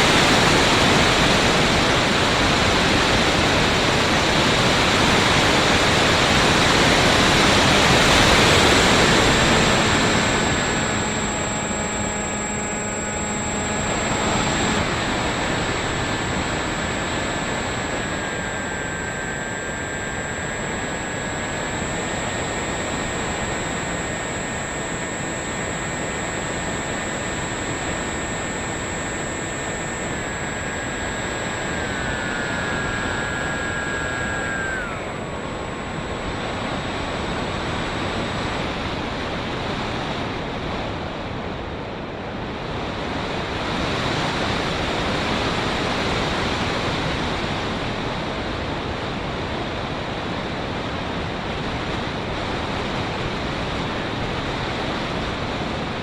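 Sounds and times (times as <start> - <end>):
model plane motor whining: 0.0 - 40.1.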